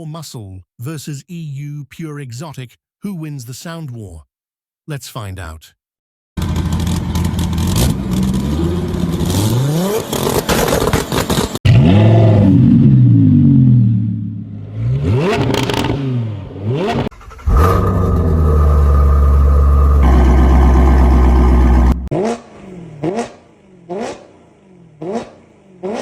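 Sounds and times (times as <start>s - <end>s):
car engines revving: 6.4s - 26.0s.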